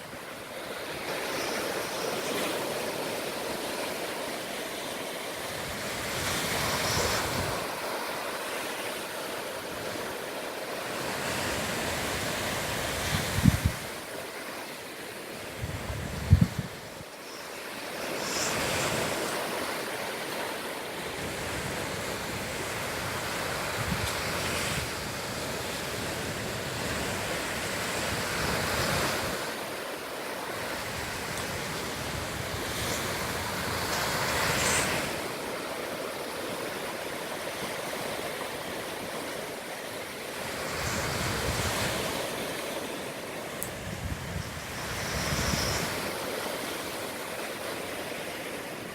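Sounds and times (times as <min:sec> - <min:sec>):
ocean surf breaking: 0:00.0 - 0:48.9.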